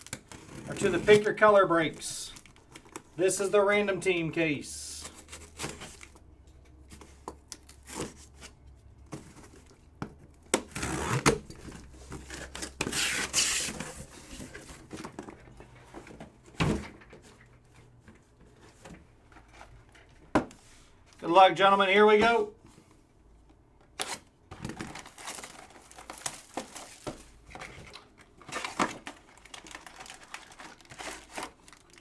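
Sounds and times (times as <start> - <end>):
packaging rustle: 0.0 - 3.2, 24.0 - 32.0.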